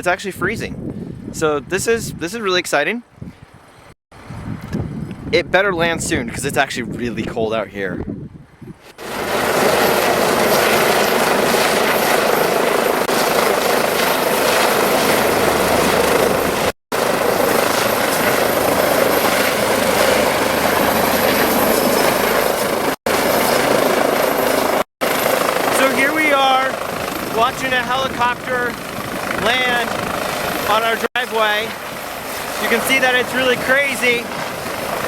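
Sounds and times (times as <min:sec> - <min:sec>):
helicopter rotor and engine: 0:09.0 - 0:35.0.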